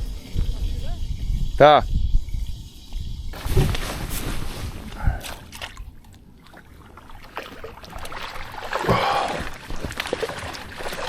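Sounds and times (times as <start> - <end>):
water sloshing around a kayak: 3.4 - 11.0.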